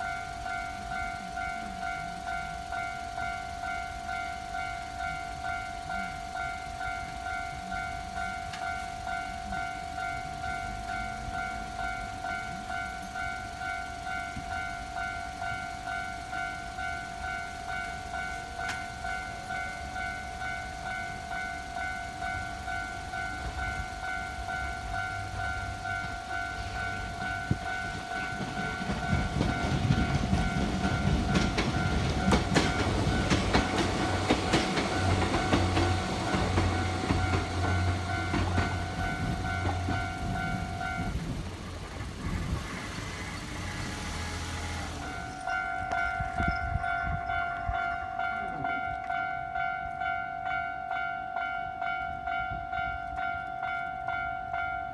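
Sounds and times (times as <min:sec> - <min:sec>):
level crossing bell ringing: 0:00.0 - 0:41.6, 0:45.0 - 0:54.9
train wheels clattering: 0:00.0 - 0:50.2.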